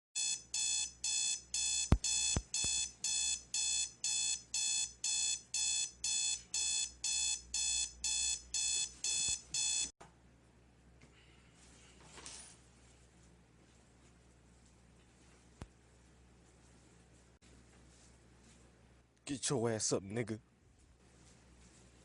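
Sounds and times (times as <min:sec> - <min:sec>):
alarm clock beeping: 0:00.2 - 0:09.9.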